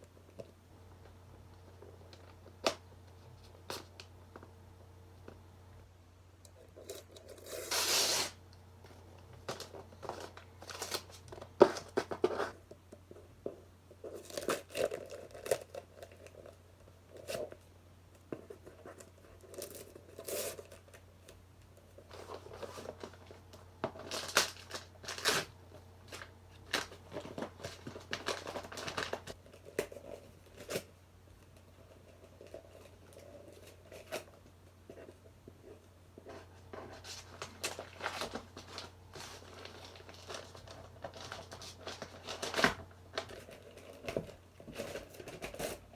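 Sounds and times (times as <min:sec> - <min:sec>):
packaging tearing and crumpling: 0:24.0 - 0:29.4, 0:37.0 - 0:43.5.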